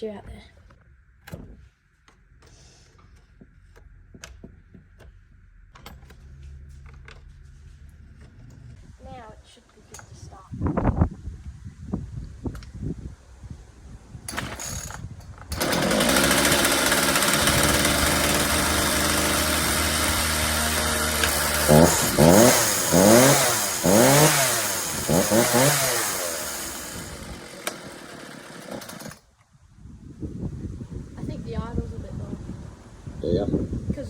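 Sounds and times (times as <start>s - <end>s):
chainsaw running and revving: 14.3s - 14.9s, 15.5s - 29.3s.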